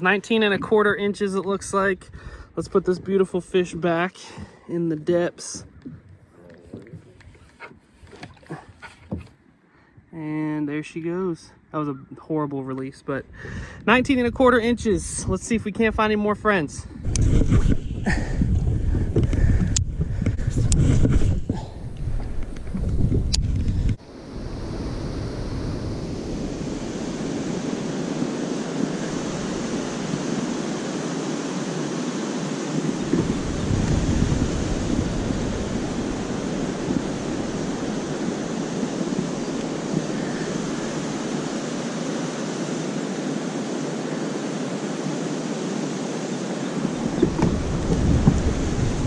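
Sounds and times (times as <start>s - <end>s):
wind on microphone: 0.0s - 4.6s, 5.6s - 9.3s, 13.2s - 49.0s
rushing water: 24.0s - 49.0s.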